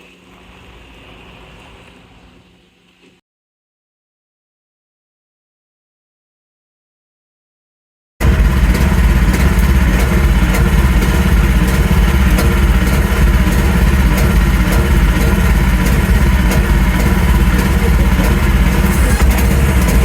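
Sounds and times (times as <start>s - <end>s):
engine running steadily: 8.2s - 20.0s
faint regular ticking: 8.2s - 20.0s.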